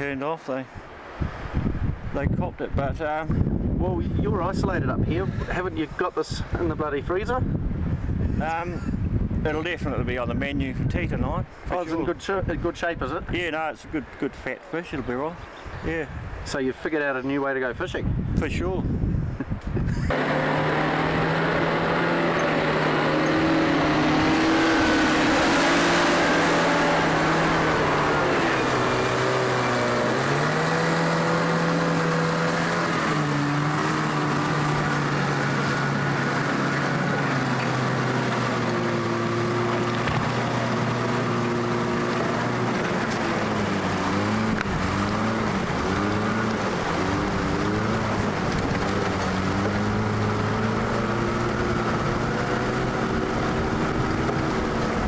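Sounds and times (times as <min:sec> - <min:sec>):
vehicle engine revving: 0:20.1 - 0:55.0.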